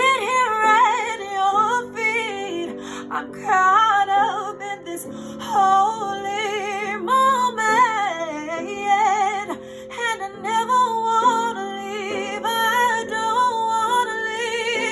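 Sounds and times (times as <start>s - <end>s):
woman singing worship song: 0.0s - 14.9s.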